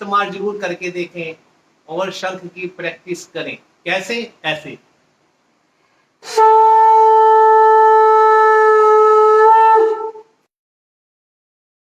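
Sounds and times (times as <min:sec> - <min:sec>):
conch shell blown: 0:06.2 - 0:10.4.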